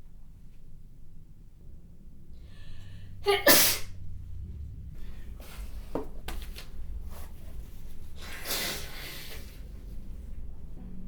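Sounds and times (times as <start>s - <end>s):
woman breathing: 2.4s - 3.2s.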